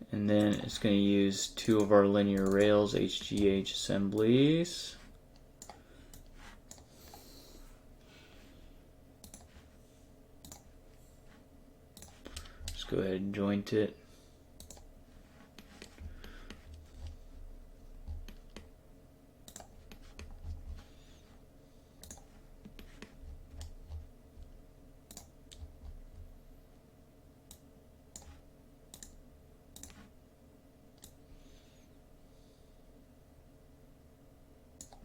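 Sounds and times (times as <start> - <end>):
faint steady hum: 0.0 - 35.0
mouse and keyboard clicks: 10.4 - 10.7.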